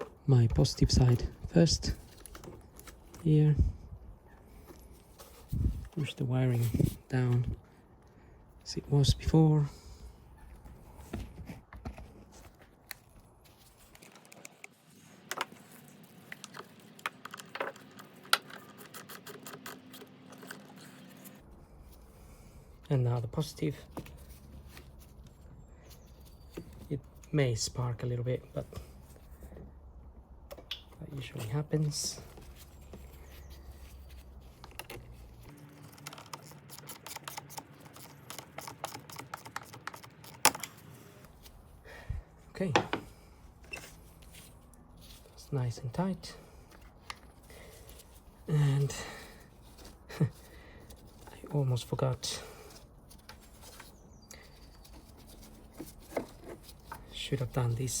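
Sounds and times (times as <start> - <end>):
hands handling battery cables: 0.0 - 3.3, 10.5 - 22.0, 28.6 - 41.8, 46.5 - 58.0.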